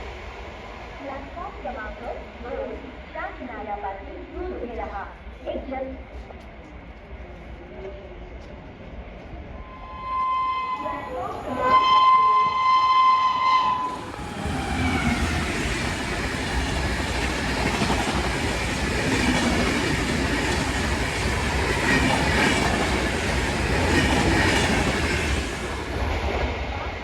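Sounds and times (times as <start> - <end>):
train passing at high speed: 0.0 - 27.0
train horn: 9.7 - 14.1.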